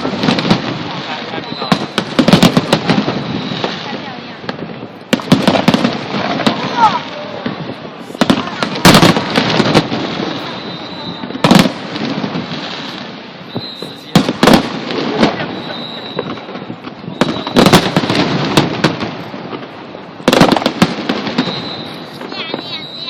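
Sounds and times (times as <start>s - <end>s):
fireworks crackling: 0.0s - 23.0s
firework shell bursts: 20.3s - 23.0s.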